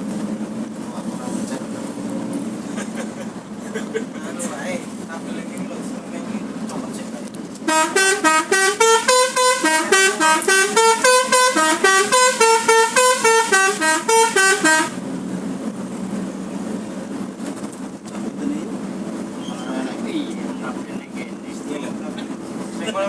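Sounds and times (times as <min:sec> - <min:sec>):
multi-trumpet air horn tune: 0:07.7 - 0:15.0.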